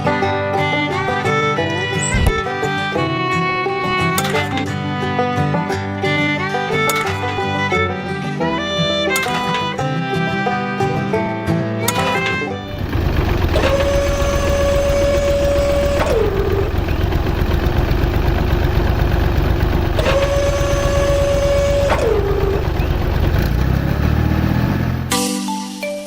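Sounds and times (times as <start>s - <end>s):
tractor engine running: 1.9s - 2.8s, 12.0s - 25.1s.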